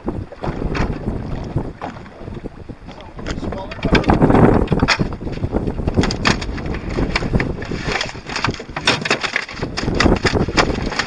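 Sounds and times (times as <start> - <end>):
wind buffeting microphone: 0.0 - 11.0
knocks and clicks of gear: 3.2 - 11.0.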